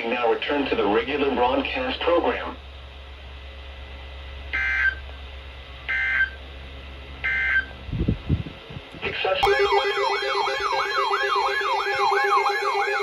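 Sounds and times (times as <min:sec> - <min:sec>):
warbling digital tones: 0:09.4 - 0:13.0.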